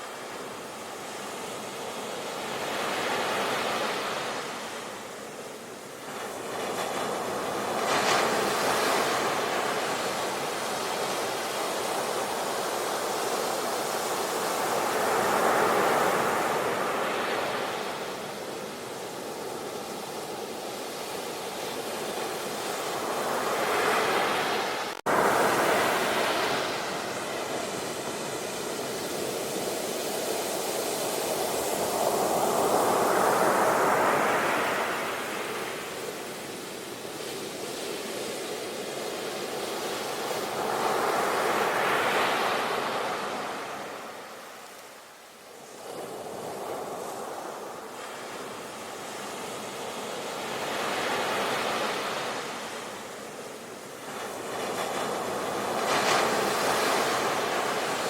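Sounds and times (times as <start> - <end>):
ocean waves breaking: 6.0 - 38.2.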